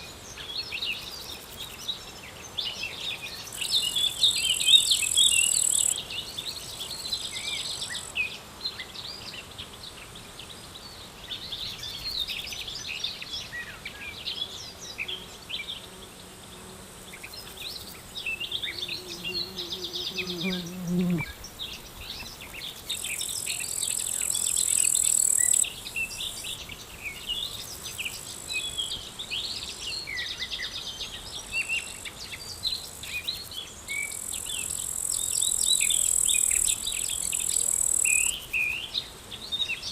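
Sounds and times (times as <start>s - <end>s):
insects trilling: 3.4s - 6.0s, 16.2s - 29.0s, 34.1s - 38.8s
small birds chirping: 17.1s - 30.1s.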